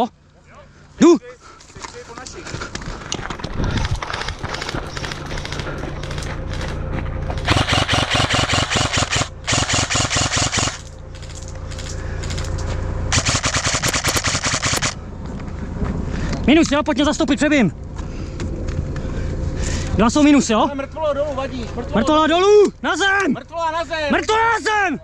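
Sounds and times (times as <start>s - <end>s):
steady low hum: 0.0s - 25.0s
airsoft gun full-auto fire: 7.5s - 10.9s, 13.1s - 15.0s.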